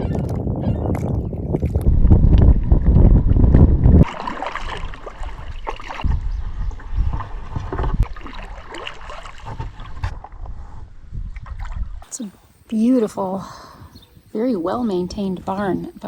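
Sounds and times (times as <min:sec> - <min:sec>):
paddle splashing in water: 0:00.1 - 0:10.7, 0:11.3 - 0:11.8.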